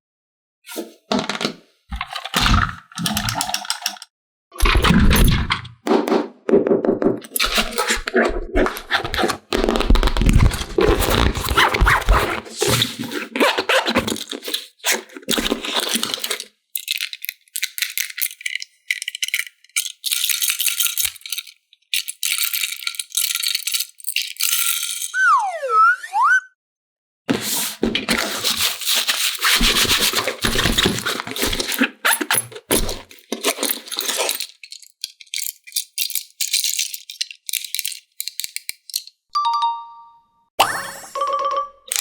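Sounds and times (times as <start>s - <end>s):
plastic toy parts rattling: 0.7s - 5.8s, 7.2s - 25.2s, 27.4s - 39.3s
packaging crinkling: 8.8s - 25.1s, 27.4s - 39.2s
swooping tone: 25.2s - 26.5s.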